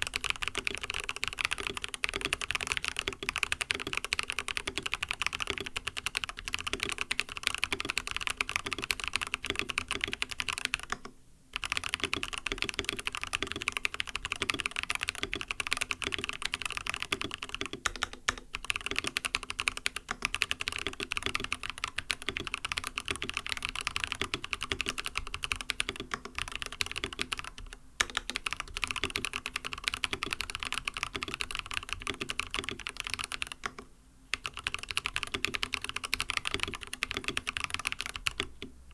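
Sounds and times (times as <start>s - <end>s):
mechanical keyboard typing: 0.0s - 38.8s.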